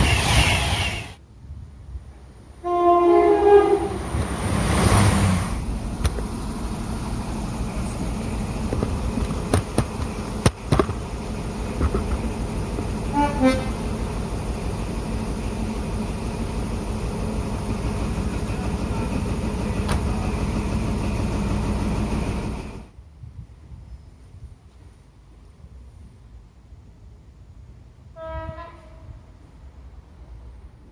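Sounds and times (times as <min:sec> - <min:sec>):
loud rushing noise: 0:00.0 - 0:01.2, 0:03.7 - 0:11.0
train horn toot: 0:02.6 - 0:04.0, 0:13.1 - 0:13.8, 0:28.1 - 0:29.2.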